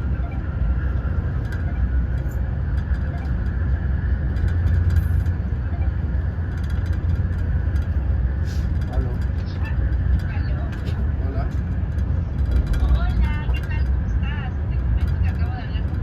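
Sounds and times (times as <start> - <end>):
train rumbling: 0.0 - 16.0
ticks and rattles: 1.0 - 16.0.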